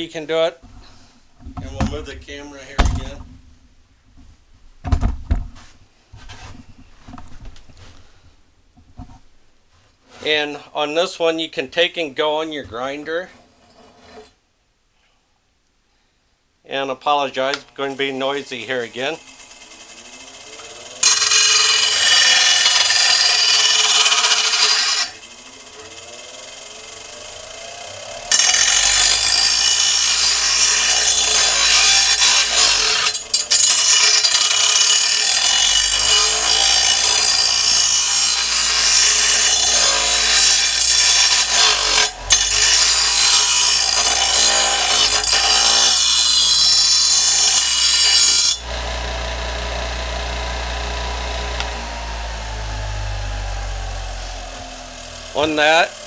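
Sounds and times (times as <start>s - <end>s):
power grinder grinding steel: 18.0s - 56.0s.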